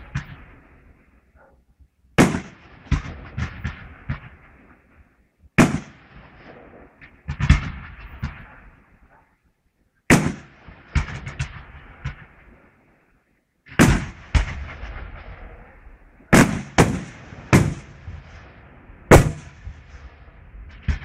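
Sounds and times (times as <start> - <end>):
fireworks bangs: 2.2 - 4.9, 5.6 - 9.2, 10.1 - 12.6, 13.7 - 21.0.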